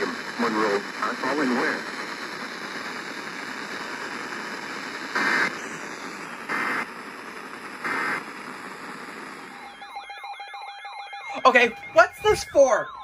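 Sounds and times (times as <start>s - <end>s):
radio static hiss: 0.0s - 10.0s
digital data tone bursts: 9.5s - 13.0s.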